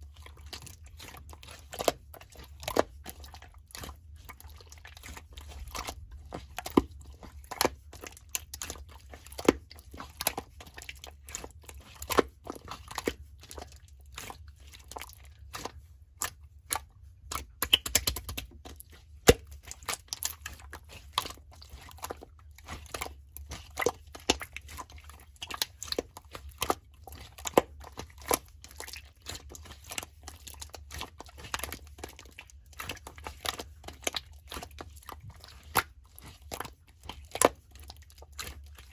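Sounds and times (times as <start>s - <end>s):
sticky slime clicks and pops: 17.6s - 18.5s.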